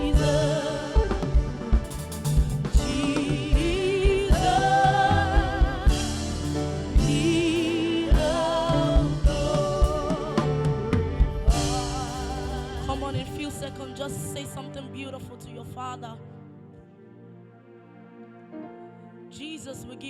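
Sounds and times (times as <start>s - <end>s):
band with drums and bass: 0.0s - 13.8s.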